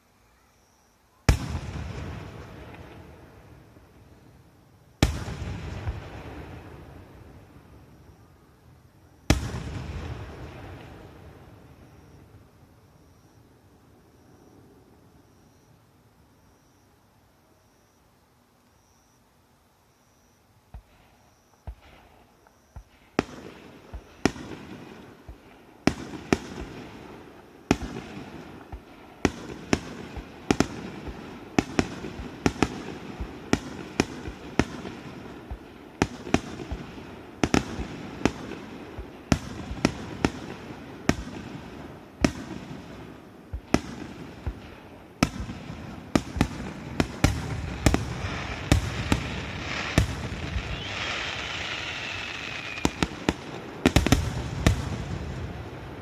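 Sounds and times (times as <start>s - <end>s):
fireworks bangs: 1.2s - 4.1s, 5.0s - 8.0s, 9.2s - 12.4s, 20.7s - 56.0s
fireworks crackling: 1.2s - 12.6s, 20.7s - 56.0s.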